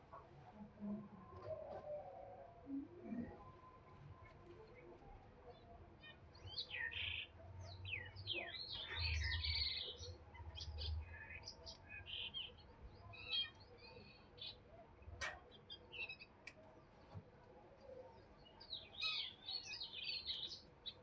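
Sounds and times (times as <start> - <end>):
sharp click: 15.2 - 15.4.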